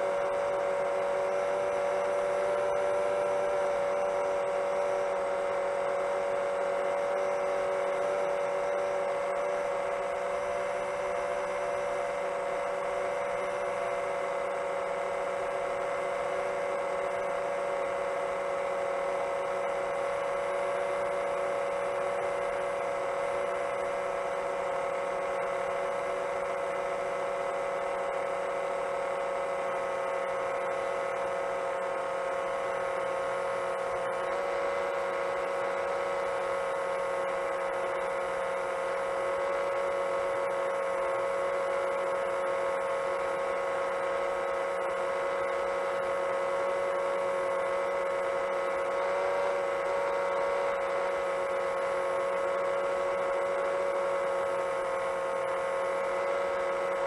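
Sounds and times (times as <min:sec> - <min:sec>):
quadcopter motors humming: 0:00.0 - 0:57.0.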